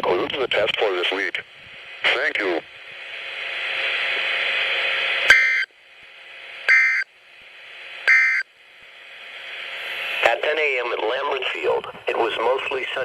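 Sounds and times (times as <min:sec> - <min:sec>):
radio static hiss: 0:00.0 - 0:13.0
digital data bursts: 0:05.3 - 0:05.7, 0:06.7 - 0:07.1, 0:08.1 - 0:08.5.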